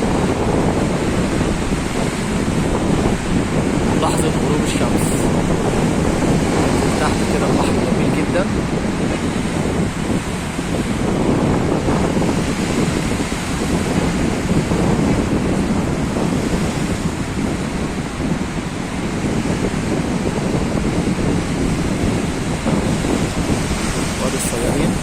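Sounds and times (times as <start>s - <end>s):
sea waves washing on shore: 0.0s - 25.0s
wind buffeting microphone: 0.0s - 25.0s.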